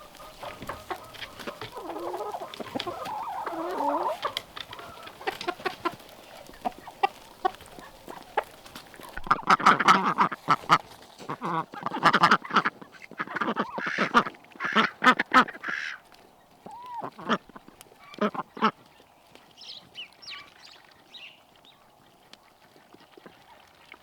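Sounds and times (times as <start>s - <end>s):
ducks quacking: 0.0s - 19.0s
chickens clucking: 0.0s - 21.3s.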